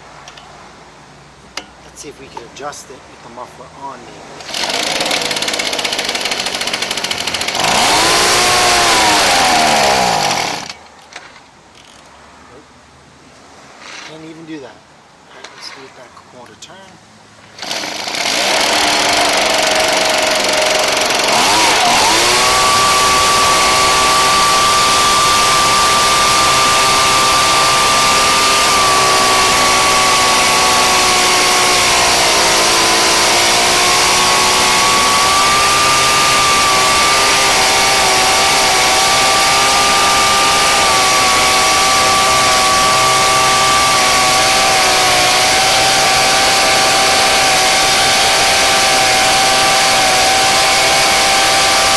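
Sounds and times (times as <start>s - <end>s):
blower gas engine running: 4.5s - 10.7s, 17.6s - 51.9s.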